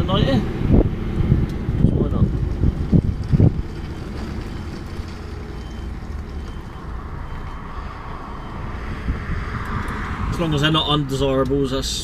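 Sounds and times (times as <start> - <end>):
diesel truck engine idling: 0.0 - 9.1.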